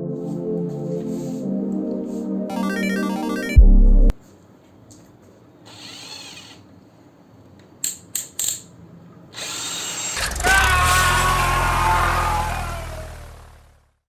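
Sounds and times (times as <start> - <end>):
hand drill whirring: 5.7 - 6.6, 9.4 - 13.0.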